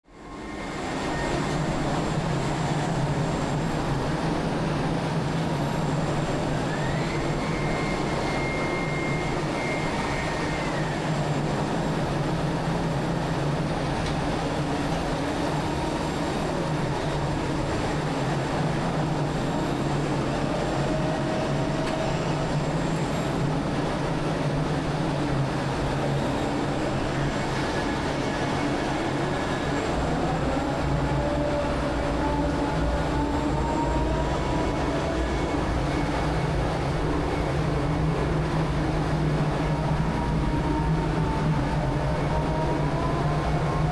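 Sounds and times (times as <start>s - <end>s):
faint high whine: 0.2s - 24.2s.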